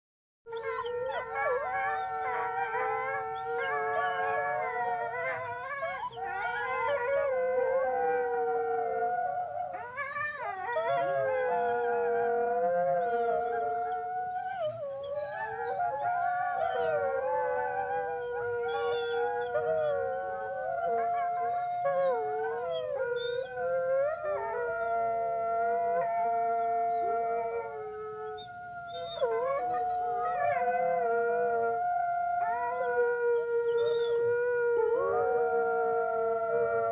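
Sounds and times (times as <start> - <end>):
wolves yipping: 0.5 - 7.3, 14.6 - 21.6
wolves howling: 0.5 - 36.9.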